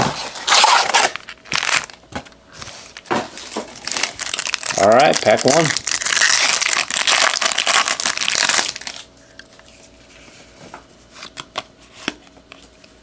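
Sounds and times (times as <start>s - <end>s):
wrapper tearing and crinkling: 0.2s - 2.0s, 3.4s - 9.1s.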